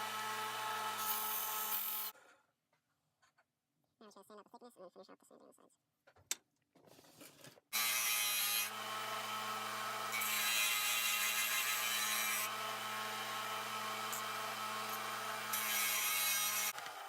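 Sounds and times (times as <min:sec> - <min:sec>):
electric sander motor: 0:00.0 - 0:01.0, 0:08.6 - 0:10.3, 0:11.5 - 0:17.0.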